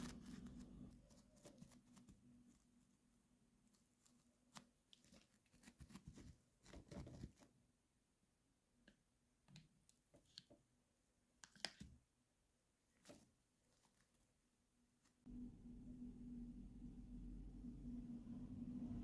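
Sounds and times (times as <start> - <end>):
rustling: 12.9 - 15.3.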